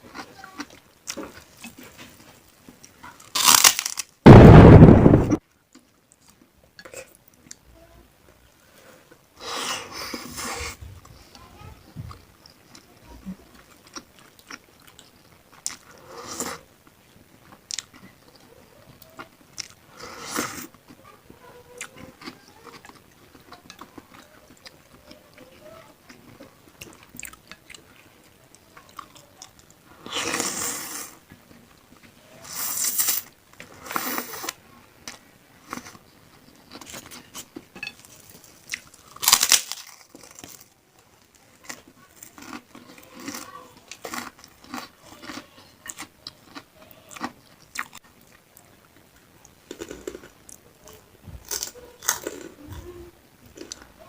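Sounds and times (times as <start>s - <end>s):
chewing and biting: 41.6s - 48.4s.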